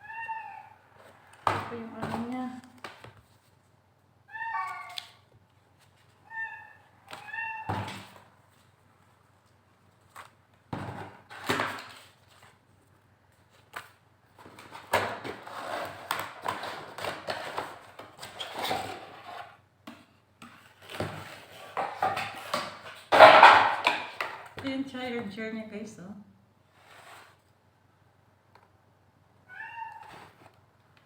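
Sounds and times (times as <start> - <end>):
packaging rustling and scraping: 9.9 - 19.6, 20.5 - 24.2, 26.7 - 27.5.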